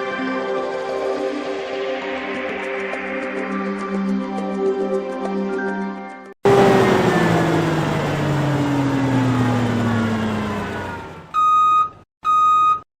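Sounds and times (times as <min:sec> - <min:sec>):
machine whine winding down: 0:06.4 - 0:11.4
electronic beeps: 0:11.3 - 0:12.8.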